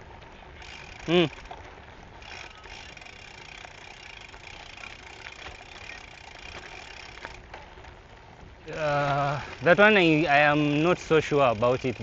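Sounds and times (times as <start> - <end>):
bike tyres rolling on gravel: 0.0 - 12.0
light ticks and crunches: 0.0 - 12.0.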